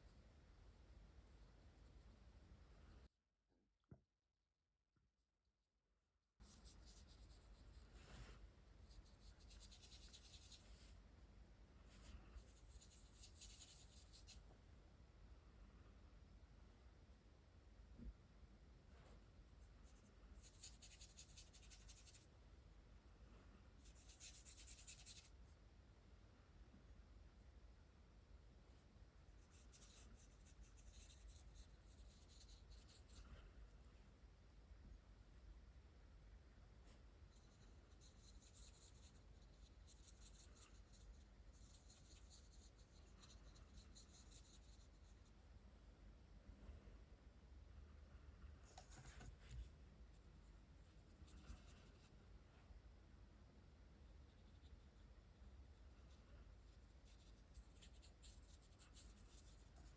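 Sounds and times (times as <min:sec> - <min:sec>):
marker brush strokes on paper: 0:06.4 - 0:11.1, 0:11.8 - 0:14.5, 0:18.9 - 0:22.3, 0:23.8 - 0:25.4, 0:29.3 - 0:33.9, 0:36.8 - 0:45.6, 0:48.6 - 0:52.2, 0:54.1 - 0:59.9.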